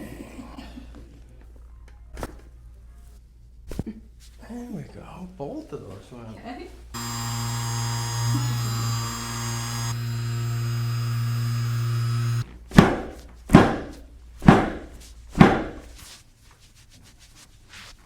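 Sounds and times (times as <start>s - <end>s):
small electric motor buzzing: 7.0s - 12.4s.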